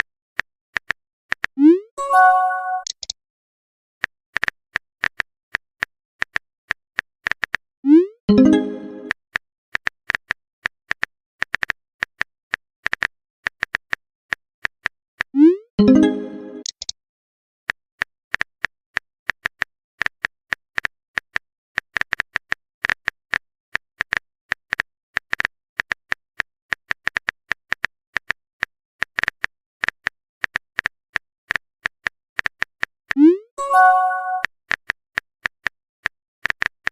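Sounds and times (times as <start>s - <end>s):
keyboard typing clicks: 0.8s - 3.2s, 7.4s - 9.2s, 15.3s - 16.9s, 31.8s - 34.5s.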